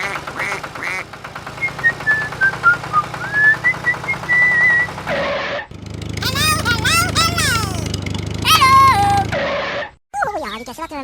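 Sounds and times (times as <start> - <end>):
whistled tune: 1.6 - 4.9
small motor rattling: 5.7 - 9.3.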